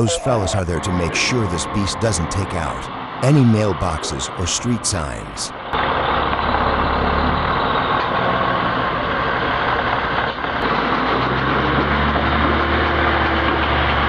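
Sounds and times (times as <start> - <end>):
diesel truck engine drone: 0.0 - 14.0
road noise: 0.0 - 14.0.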